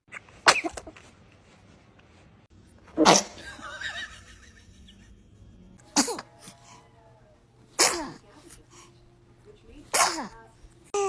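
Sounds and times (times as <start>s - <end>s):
baby sneezing: 0.1s - 1.2s, 2.9s - 3.4s, 5.9s - 6.8s, 7.8s - 8.7s, 9.9s - 11.0s.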